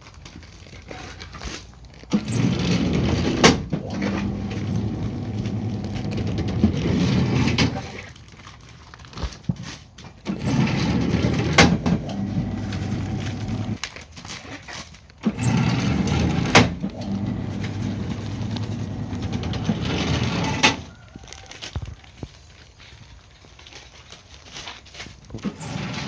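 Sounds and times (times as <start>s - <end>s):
press machine motor humming: 2.2s - 7.8s, 10.3s - 13.8s, 15.3s - 20.9s.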